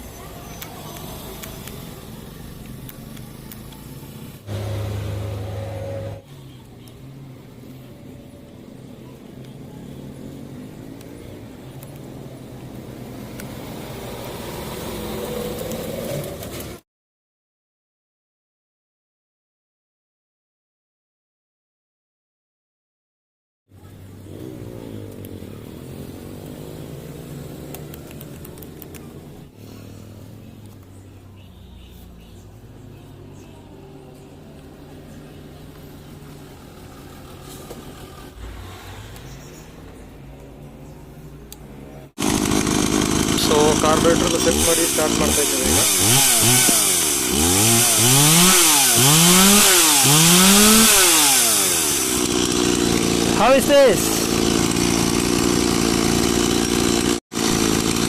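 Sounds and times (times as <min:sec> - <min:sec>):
chainsaw engine running: 0:03.2 - 0:06.2, 0:24.3 - 0:30.0, 0:42.2 - 0:58.0.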